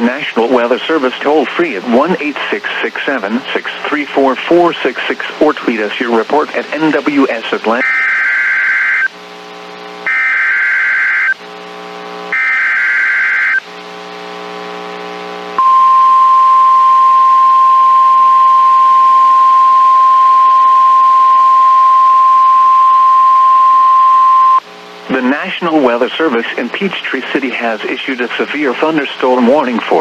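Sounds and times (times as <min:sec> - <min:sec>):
low buzzing hum: 0:07.8 - 0:25.1
steady warning alarm tone: 0:15.6 - 0:24.6.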